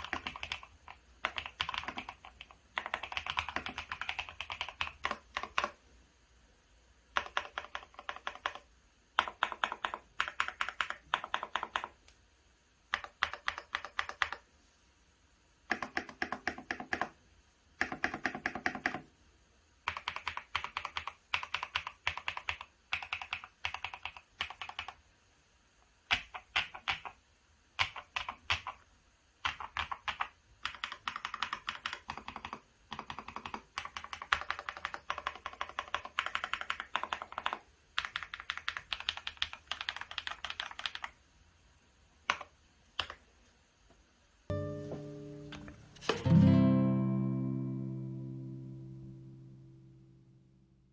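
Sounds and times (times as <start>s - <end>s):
mechanical keyboard typing: 0.0s - 5.8s, 7.1s - 12.0s, 12.9s - 14.5s, 15.7s - 17.2s, 17.8s - 19.0s, 19.9s - 25.0s, 26.1s - 27.2s, 27.8s - 41.2s, 42.2s - 43.2s.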